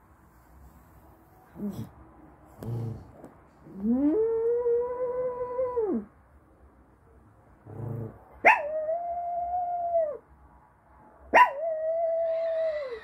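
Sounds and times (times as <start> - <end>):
dog howling: 11.5 - 13.0.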